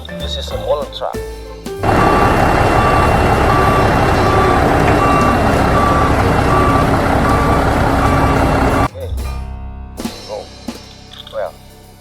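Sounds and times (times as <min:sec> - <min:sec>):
backup alarm beeping: 0:01.8 - 0:08.9
truck engine running: 0:01.8 - 0:08.9.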